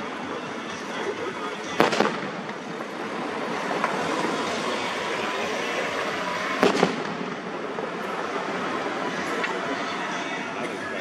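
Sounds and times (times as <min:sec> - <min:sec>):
fireworks banging: 0:01.6 - 0:08.2.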